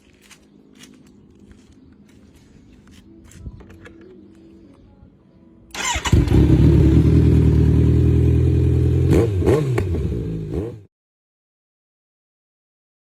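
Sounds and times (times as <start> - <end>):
starter cranking: 5.7 - 6.5
motorcycle engine idling: 5.7 - 9.1.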